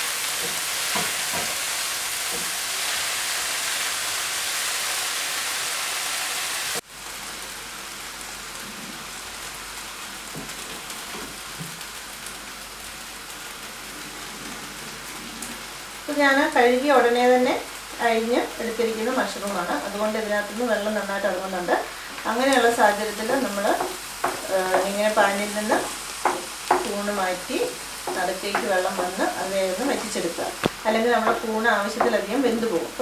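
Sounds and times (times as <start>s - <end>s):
mushrooms sizzling in a frying pan: 0.0s - 33.0s
stirring scrapes: 23.3s - 27.0s.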